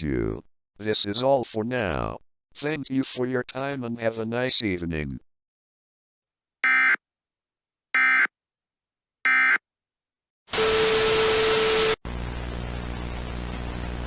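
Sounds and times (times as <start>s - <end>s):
digital data tones: 6.6s - 7.0s, 8.0s - 8.3s, 9.3s - 9.6s.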